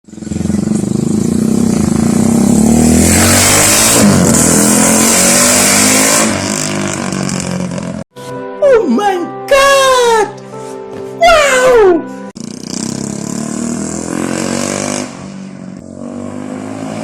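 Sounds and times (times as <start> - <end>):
motorcycle engine revving high: 0.1 - 8.0, 12.4 - 17.0.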